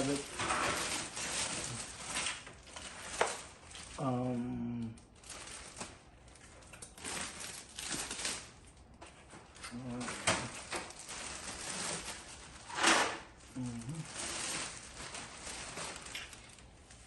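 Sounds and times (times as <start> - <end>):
packaging rustling and crinkling: 0.0 - 17.0
man humming: 4.0 - 5.0, 13.5 - 14.2.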